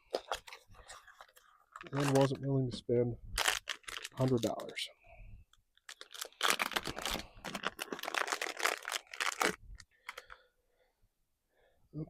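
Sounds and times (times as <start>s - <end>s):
packaging crinkling and rustling: 0.0s - 2.5s, 3.4s - 4.9s, 5.7s - 10.4s.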